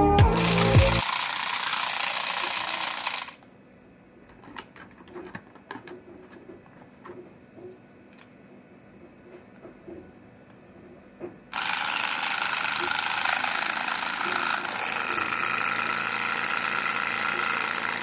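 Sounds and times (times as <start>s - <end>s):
massage gun buzzing rattle: 0.4s - 3.4s, 11.6s - 18.0s.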